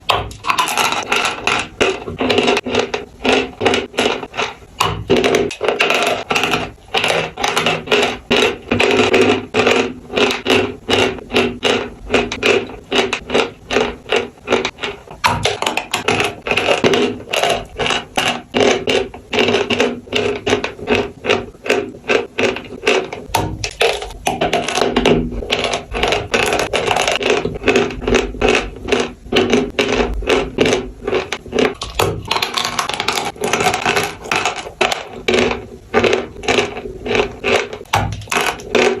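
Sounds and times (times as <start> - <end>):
chalk crunching and crumbling: 0.0 - 39.0.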